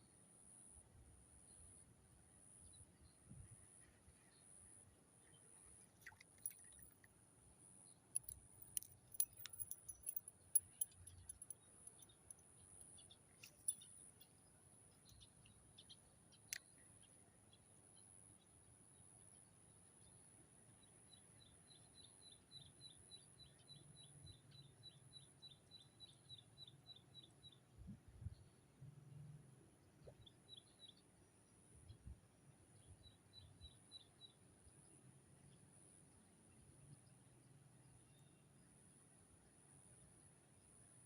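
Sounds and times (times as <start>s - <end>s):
sharp clicks and small rattles: 8.2s - 12.5s, 13.3s - 14.4s.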